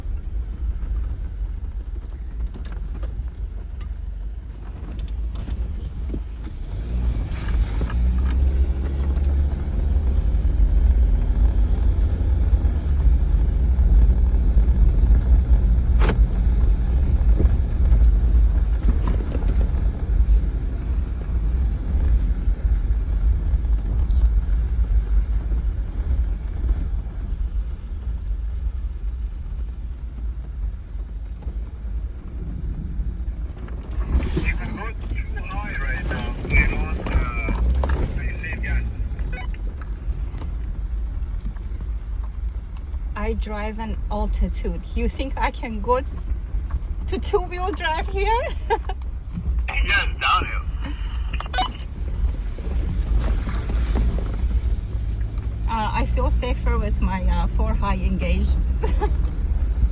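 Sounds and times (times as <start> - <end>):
engine and tyres rumbling: 0.0 - 59.9.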